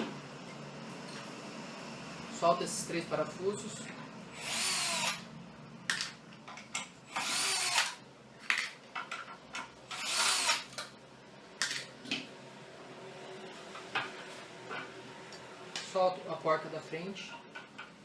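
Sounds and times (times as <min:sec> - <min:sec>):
power screwdriver whining: 0:04.4 - 0:05.3, 0:07.1 - 0:08.0, 0:09.9 - 0:10.7.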